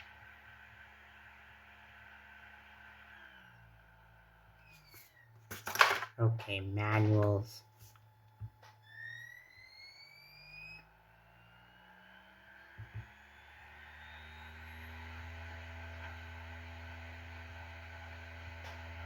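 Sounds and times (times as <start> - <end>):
disc drive whirring: 0.0 - 5.4, 7.0 - 19.0.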